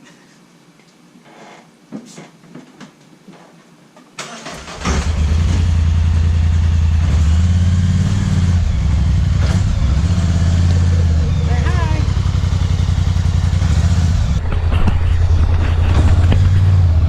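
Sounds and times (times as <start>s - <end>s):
atv engine starting and running: 4.2s - 17.0s.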